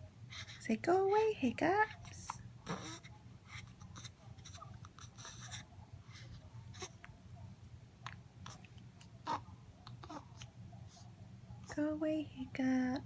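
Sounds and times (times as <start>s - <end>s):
steady low hum: 0.0s - 13.0s
baby hiccuping: 9.2s - 9.4s.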